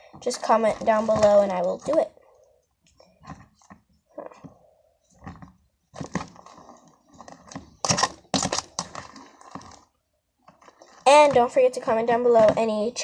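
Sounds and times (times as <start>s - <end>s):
slime squishing and crackling: 0.2s - 2.3s, 5.2s - 13.0s.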